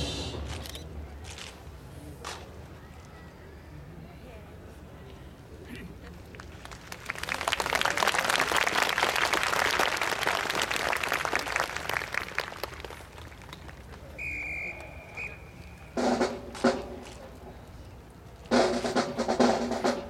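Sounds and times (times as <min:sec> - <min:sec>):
snare and bass drum strokes: 0:00.0 - 0:00.6, 0:15.9 - 0:17.3, 0:18.5 - 0:20.0
audience applause: 0:06.3 - 0:14.9
whistle blasts: 0:14.2 - 0:16.2.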